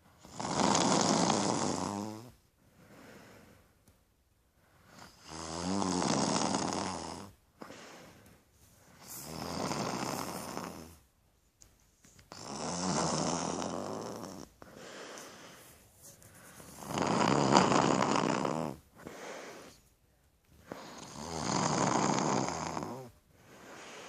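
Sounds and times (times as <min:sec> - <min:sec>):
quiet breaths: 0:00.0 - 0:24.0
person snoring: 0:00.2 - 0:02.4, 0:05.0 - 0:07.8, 0:09.0 - 0:11.0, 0:12.3 - 0:15.7, 0:16.5 - 0:19.8, 0:20.7 - 0:24.0.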